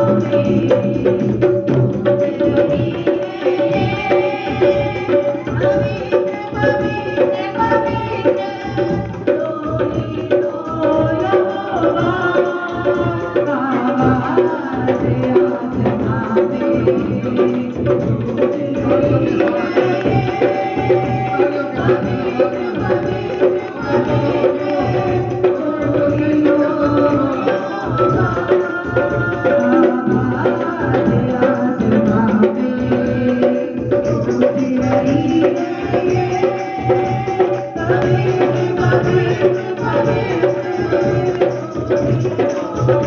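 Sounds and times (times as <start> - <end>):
hand drum beat: 0.0 - 43.0.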